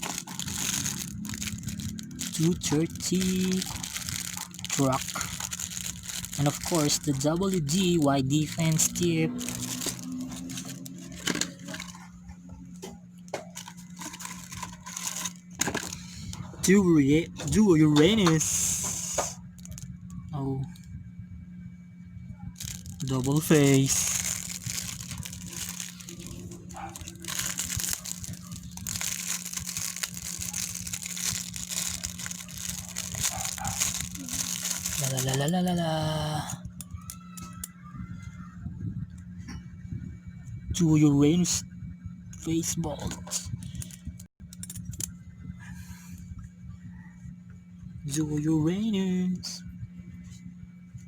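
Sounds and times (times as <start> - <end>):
packaging crinkling: 0.0 - 12.1, 13.3 - 16.8, 17.5 - 20.0, 22.6 - 37.7
plastic parts clicking and crackling: 0.0 - 12.1, 12.8 - 16.0, 17.4 - 20.7, 22.6 - 37.7
steady low hum: 0.0 - 51.0.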